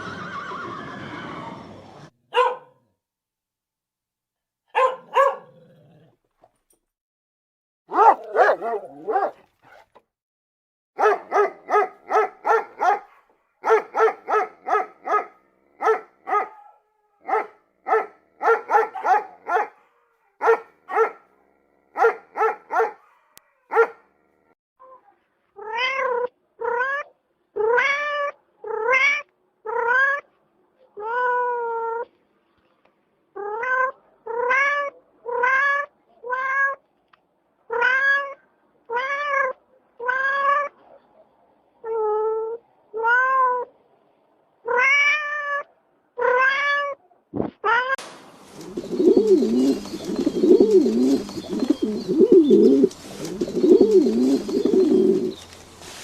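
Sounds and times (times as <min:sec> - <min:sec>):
cat meowing: 0:37.7 - 0:40.8, 0:44.7 - 0:47.0.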